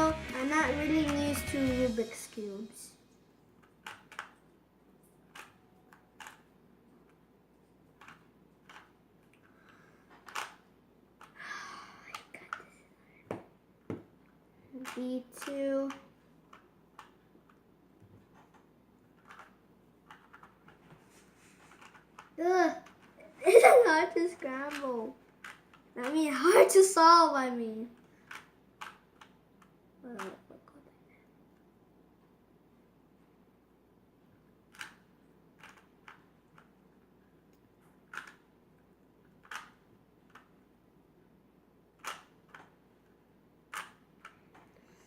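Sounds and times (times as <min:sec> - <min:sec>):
plastic clicks of puzzle cube twisting: 0:03.6 - 0:04.4, 0:05.3 - 0:07.2, 0:07.9 - 0:10.6, 0:14.8 - 0:17.6, 0:18.3 - 0:20.9, 0:21.7 - 0:23.1, 0:24.7 - 0:26.2, 0:28.0 - 0:30.4, 0:34.7 - 0:36.8, 0:37.5 - 0:38.5, 0:39.3 - 0:40.6, 0:42.0 - 0:42.8, 0:43.7 - 0:44.8.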